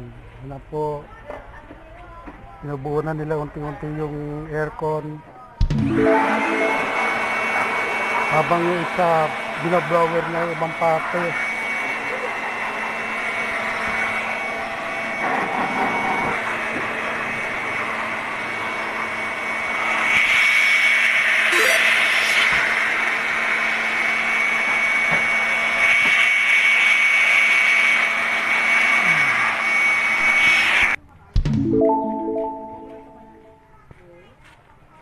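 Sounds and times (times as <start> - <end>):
electric air blower whining: 6.3 - 31.0.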